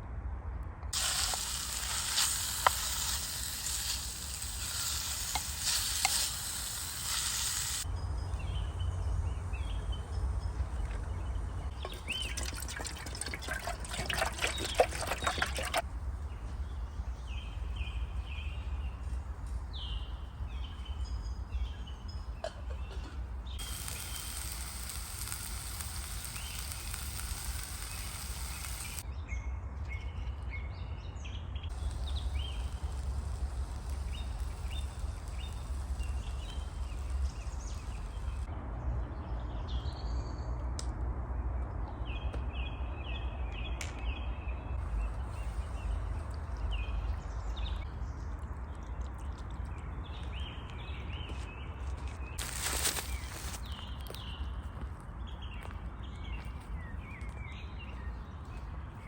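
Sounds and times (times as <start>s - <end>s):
even hiss: 1.0s - 12.8s, 23.5s - 29.0s, 31.7s - 38.5s, 44.8s - 47.8s, 52.4s - 53.8s
small birds chirping: 1.0s - 29.1s, 31.7s - 38.5s, 43.6s - 59.0s
steady low rumble: 7.8s - 11.8s.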